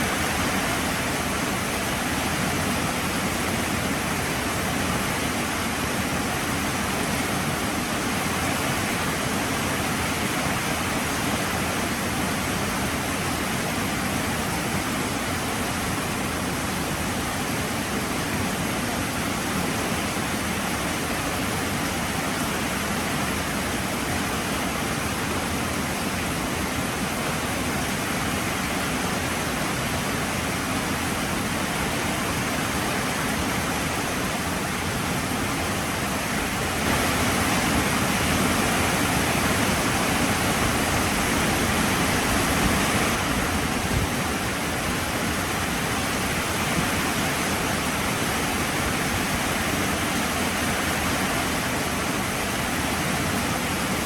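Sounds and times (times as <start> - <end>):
heavy rain hissing: 29.0 - 54.0.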